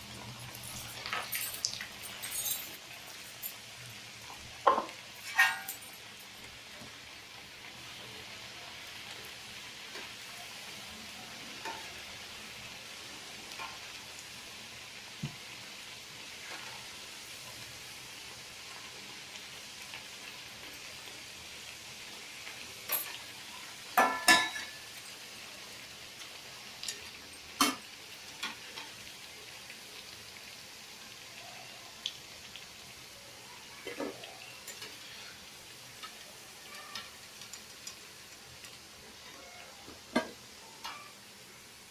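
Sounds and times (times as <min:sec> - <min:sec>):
food deep-frying in oil: 0:00.0 - 0:41.9
utensil clinking against pan: 0:04.7 - 0:05.9, 0:24.0 - 0:24.8.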